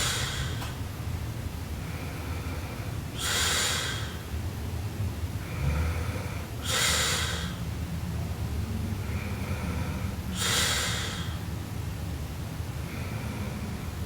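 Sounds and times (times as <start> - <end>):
breathy rush of air: 0.0 - 1.0, 1.9 - 4.4, 5.9 - 7.8, 9.0 - 11.7.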